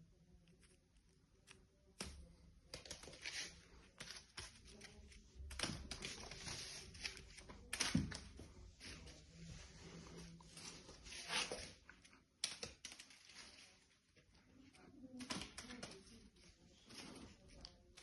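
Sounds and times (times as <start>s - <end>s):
paper ball crinkling: 0.2s - 9.5s.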